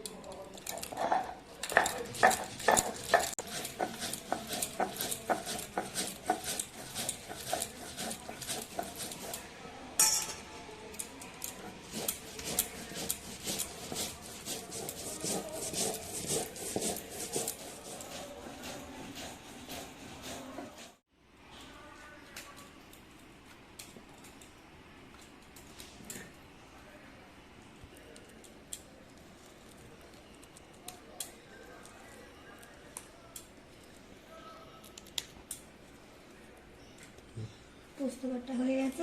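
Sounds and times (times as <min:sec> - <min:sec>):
knocking and scraping strokes: 0:00.0 - 0:21.0.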